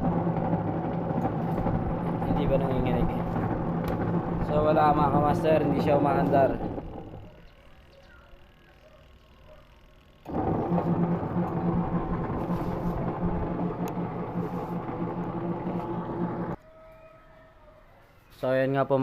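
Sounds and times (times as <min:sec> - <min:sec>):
gearbox grinding: 0:00.0 - 0:07.4, 0:10.3 - 0:16.6
washing machine motor humming: 0:00.0 - 0:07.8, 0:09.8 - 0:16.6.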